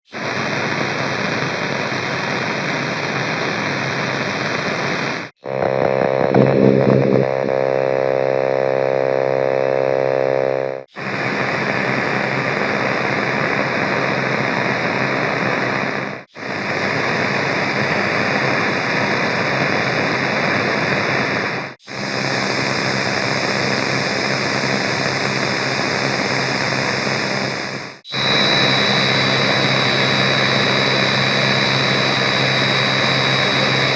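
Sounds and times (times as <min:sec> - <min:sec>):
radio static hiss: 0:00.1 - 0:33.9
buzzing hum: 0:05.4 - 0:16.3, 0:28.1 - 0:33.9
steady high whistle: 0:28.0 - 0:33.9.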